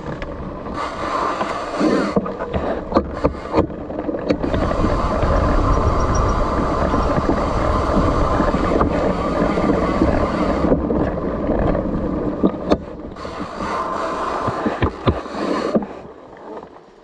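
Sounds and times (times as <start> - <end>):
wind buffeting microphone: 0.0 - 15.3
bike tyres rattling on dirt and rock: 4.1 - 10.2
sharp clicks: 4.3 - 9.0.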